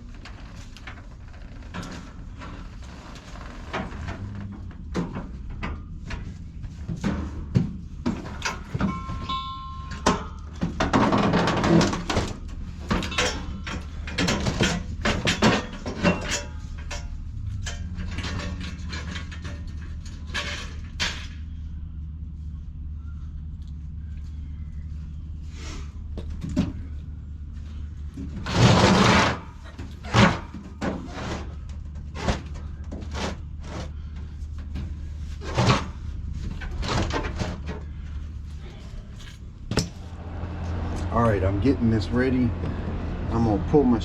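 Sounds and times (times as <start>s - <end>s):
low hum: 0.0s - 44.0s
metal knocks and scrapes: 3.7s - 21.6s, 27.7s - 38.1s, 39.7s - 44.0s.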